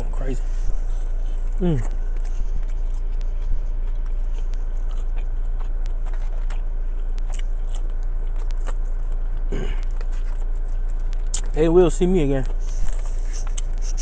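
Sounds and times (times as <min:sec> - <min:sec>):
chewing crunchy fried food: 0:00.0 - 0:14.0
steady low hum: 0:00.0 - 0:14.0.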